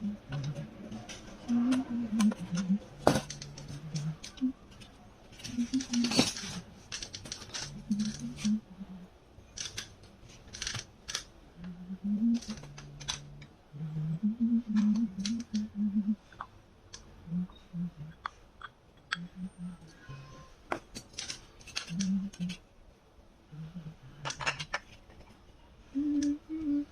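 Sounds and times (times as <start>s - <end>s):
scrap parts clicking and clinking: 0.3s - 8.5s, 9.5s - 11.3s, 20.7s - 22.6s, 24.2s - 25.3s
quiet background music: 19.0s - 22.7s.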